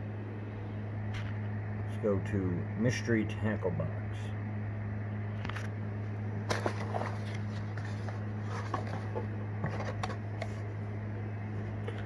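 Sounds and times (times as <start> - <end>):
steady low hum: 0.0 - 12.0
cardboard box rustling and tapping: 6.4 - 10.8.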